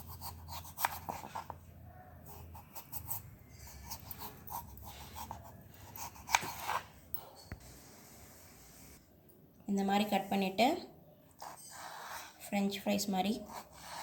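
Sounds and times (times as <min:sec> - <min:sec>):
knife slicing potato: 0:00.0 - 0:01.5, 0:02.3 - 0:06.9, 0:13.4 - 0:14.0.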